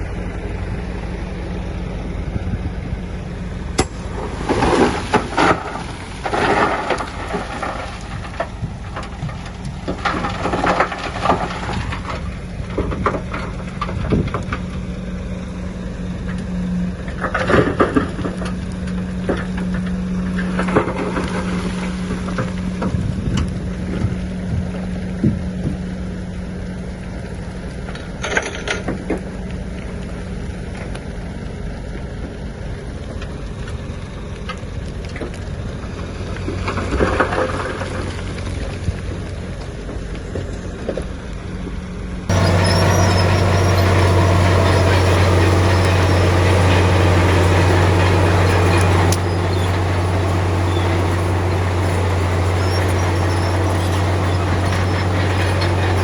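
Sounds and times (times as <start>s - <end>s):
diesel engine running: 0.0s - 25.1s, 42.3s - 56.0s
soil and stones crunching: 42.3s - 56.0s.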